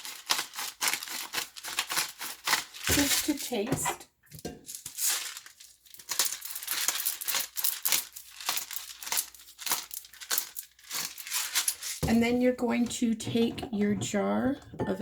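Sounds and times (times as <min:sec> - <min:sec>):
salt and pepper grinding strokes: 0:00.0 - 0:03.3.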